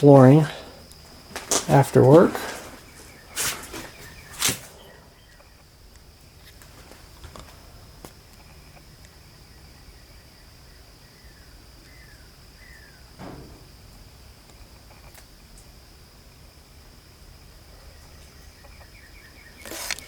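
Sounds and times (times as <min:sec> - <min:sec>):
high insect drone: 0:00.0 - 0:20.0
sharp knocks: 0:13.2 - 0:13.8.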